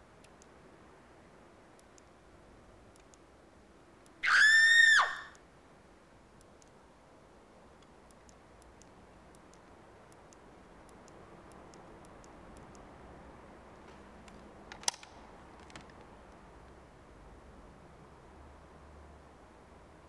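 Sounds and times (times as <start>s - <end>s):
light ticks and clicks: 0.2s - 0.6s, 1.7s - 2.2s, 2.9s - 3.3s, 6.4s - 6.8s, 7.8s - 12.9s.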